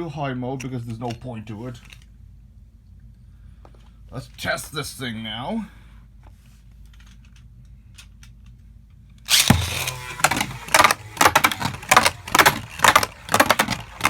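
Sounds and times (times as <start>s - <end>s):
spinning top clattering on plastic: 9.3s - 14.0s
spinning top launched: 9.3s - 14.0s.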